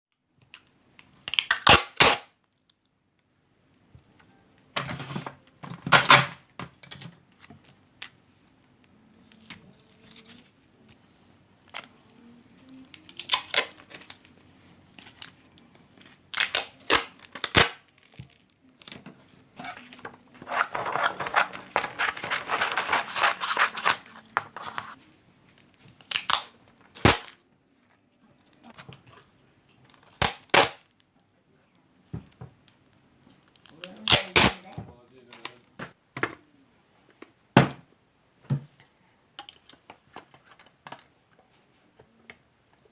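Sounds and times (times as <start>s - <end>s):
paper rustling: 18.0s - 25.8s.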